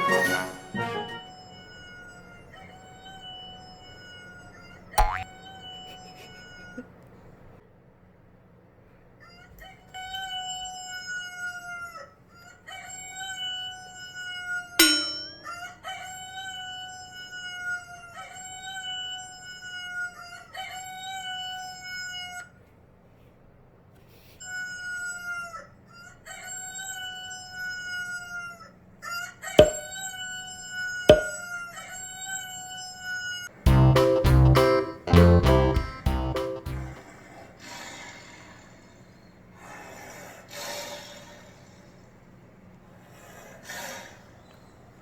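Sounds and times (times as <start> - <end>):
sharp knocks: 29.6 - 30.0, 31.1 - 31.4.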